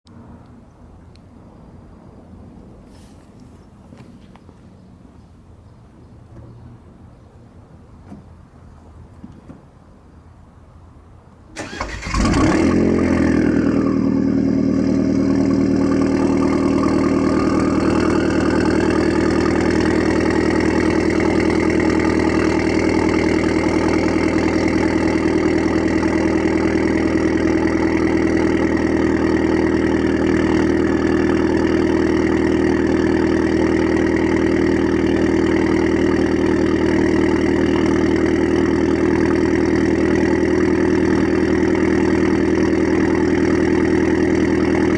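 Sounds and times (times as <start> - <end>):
car engine cranking and starting: 11.6 - 44.9
car engine idling: 11.6 - 44.9
engine revving: 11.6 - 44.9.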